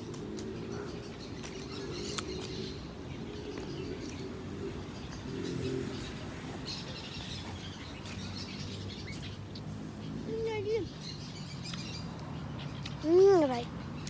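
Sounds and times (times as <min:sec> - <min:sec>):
birds cooing: 0:00.0 - 0:12.0.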